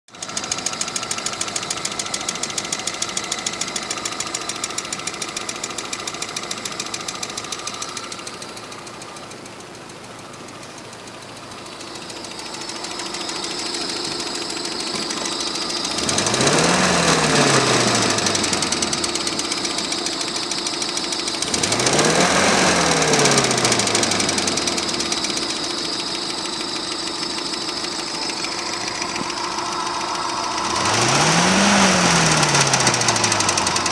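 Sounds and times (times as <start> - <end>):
engine running with a knock: 14.8 - 16.6, 28.7 - 30.8.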